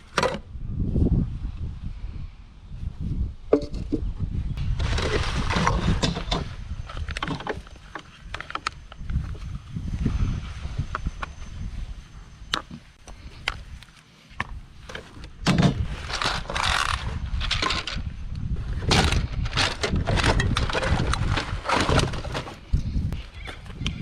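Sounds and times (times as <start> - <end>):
items clattering and rustling: 3.5 - 9.5, 14.8 - 23.7.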